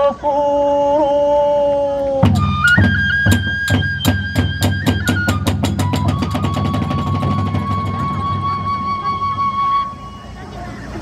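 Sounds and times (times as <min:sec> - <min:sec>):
person chanting: 0:00.0 - 0:02.3
bamboo flute high note: 0:01.0 - 0:10.7
large drum beats: 0:02.2 - 0:10.0.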